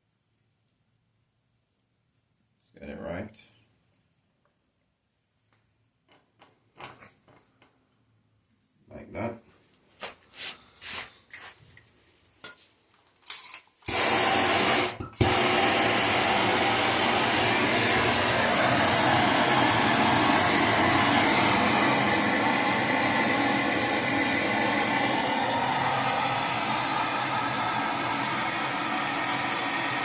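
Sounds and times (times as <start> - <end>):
gas torch hissing: 13.3 - 30.0.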